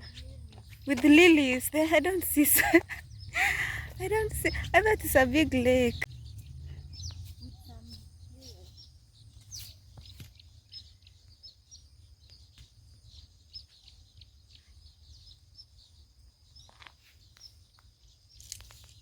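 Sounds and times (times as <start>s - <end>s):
steady low rumble: 0.0s - 9.3s
small birds chirping: 0.0s - 19.0s.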